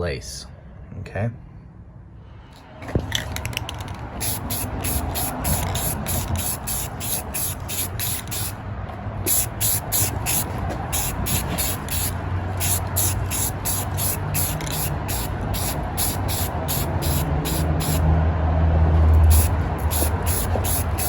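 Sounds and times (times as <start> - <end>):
aerosol can spraying: 4.2 - 8.6, 9.3 - 18.0, 19.1 - 21.0.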